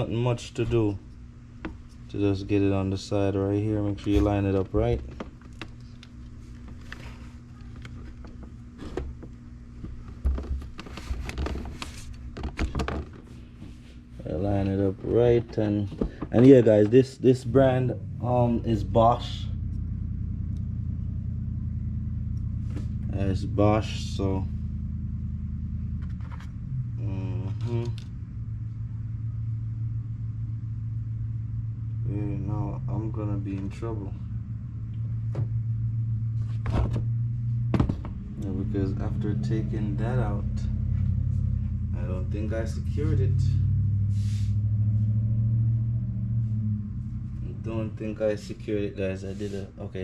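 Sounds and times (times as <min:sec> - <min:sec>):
low hum: 0:00.0 - 0:50.0.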